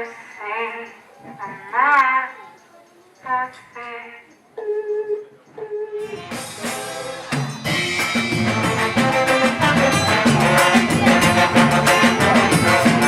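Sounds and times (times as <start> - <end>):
drums: 6.0 - 13.0
live band playing: 6.0 - 13.0.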